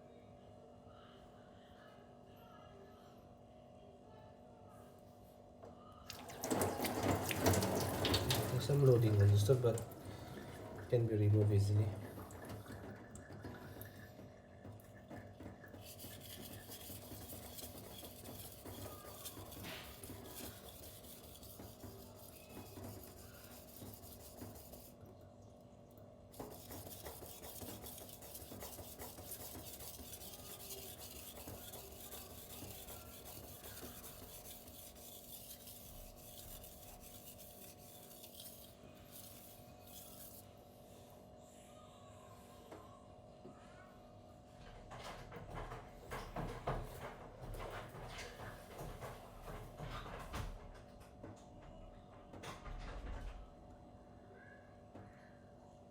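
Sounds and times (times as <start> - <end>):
knife scraping on whetstone: 15.8 - 25.0, 26.4 - 40.5.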